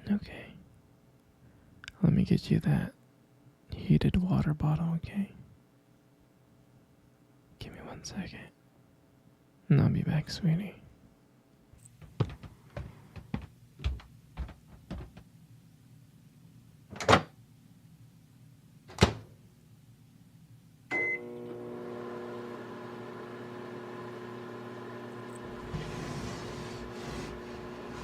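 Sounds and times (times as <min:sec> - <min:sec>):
microwave oven humming: 0:20.9 - 0:28.0.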